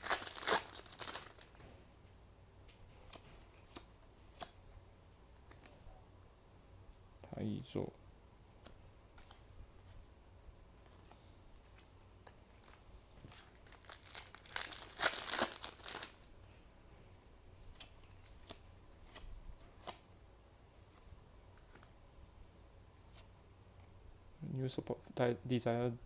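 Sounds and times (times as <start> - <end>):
foil pack tearing and crinkling: 0.0 - 1.6, 12.6 - 16.1.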